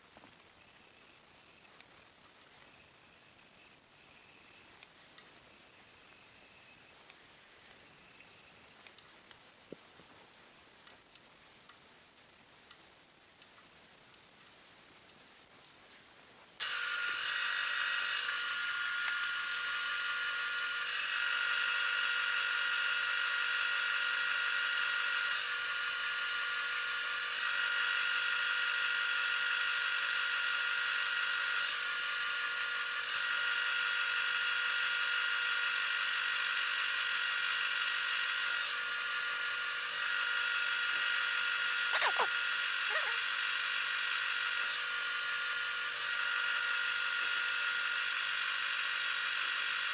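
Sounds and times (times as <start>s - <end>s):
wood lathe motor whine: 16.6s - 42.0s, 42.8s - 49.9s.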